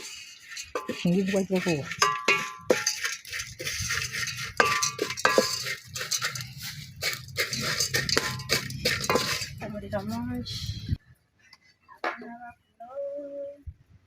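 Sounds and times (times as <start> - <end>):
dried fish rattling in metal pan: 0.0 - 10.3.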